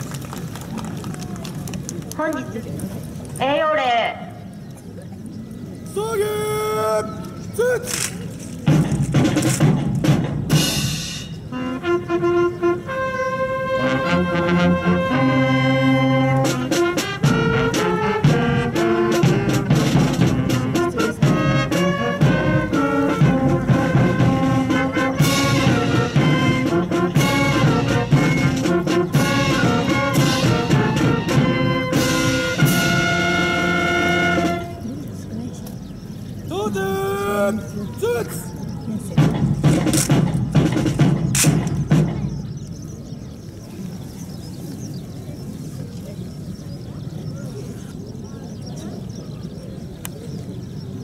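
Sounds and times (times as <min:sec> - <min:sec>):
brass band playing: 0:08.7 - 0:35.0.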